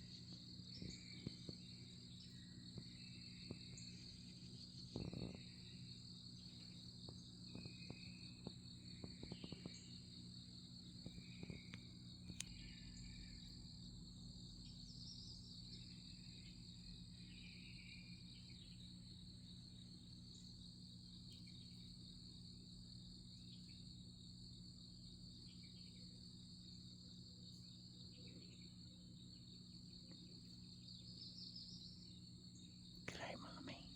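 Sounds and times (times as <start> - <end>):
insect trilling: 0.0 - 18.8
low steady hum: 0.0 - 33.9.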